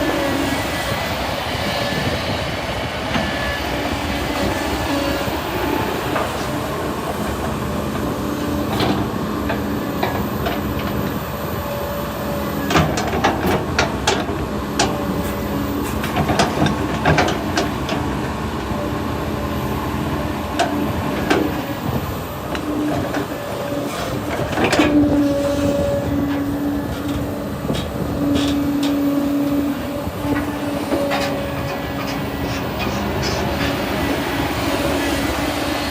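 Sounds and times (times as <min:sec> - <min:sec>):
hydraulic whine: 0:00.0 - 0:35.9.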